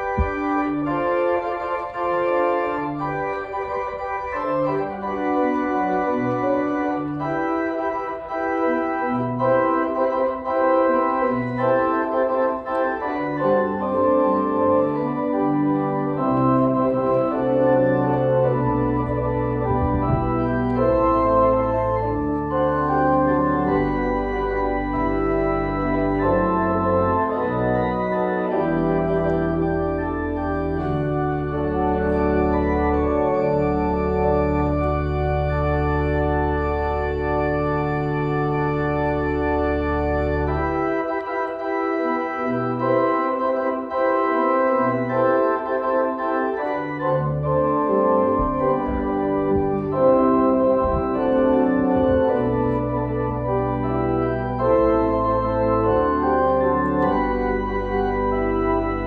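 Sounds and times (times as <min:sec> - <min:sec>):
church organ sustained chords: 0:00.0 - 0:59.0.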